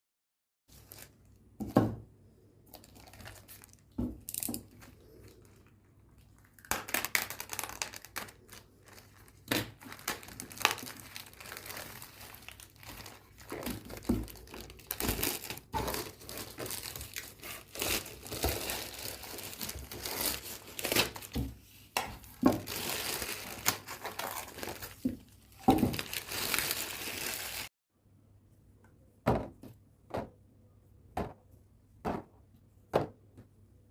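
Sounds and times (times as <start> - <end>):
packaging crinkling and tearing: 0.7 - 1.2, 2.7 - 21.4, 22.1 - 27.7.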